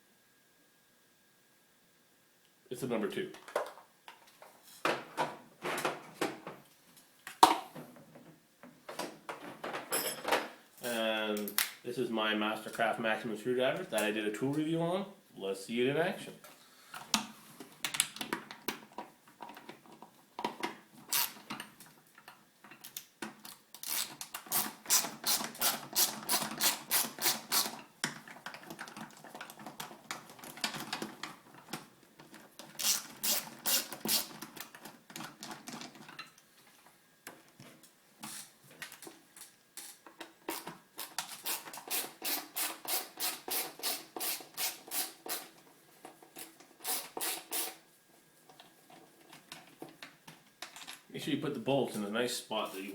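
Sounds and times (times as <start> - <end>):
screwdriver ratcheting clicks: 21.1 - 21.4.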